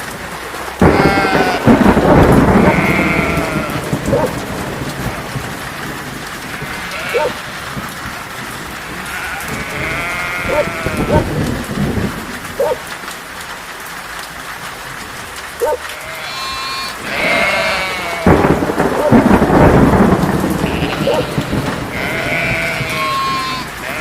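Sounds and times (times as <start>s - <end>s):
steady rain: 0.0s - 24.0s
sheep bleating: 0.8s - 4.0s, 6.5s - 7.8s, 8.9s - 11.3s, 15.9s - 18.5s, 20.6s - 24.0s
low rumble of thunder: 0.8s - 13.0s, 17.0s - 24.0s.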